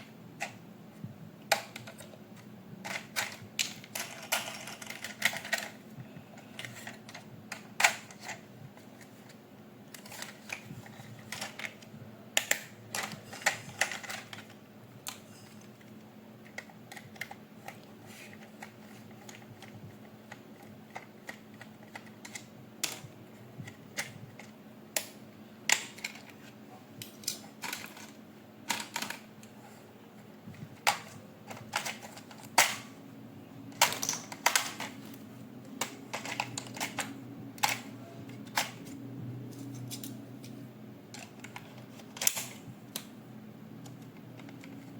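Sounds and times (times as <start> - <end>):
faint steady hum: 0.0 - 44.9
plastic toy parts rattling: 1.5 - 5.8, 6.4 - 23.1, 25.7 - 29.3, 30.5 - 32.9, 33.7 - 35.2, 35.8 - 38.9.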